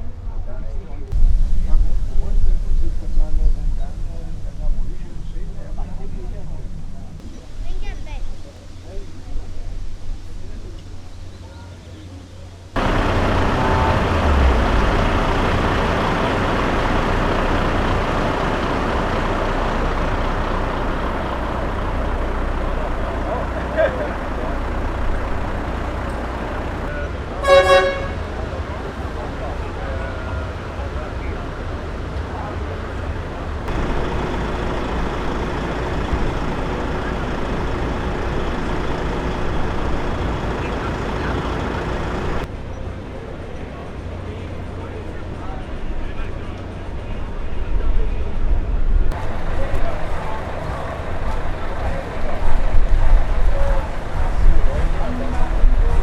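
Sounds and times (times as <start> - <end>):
truck engine rumbling: 0.0 - 56.0.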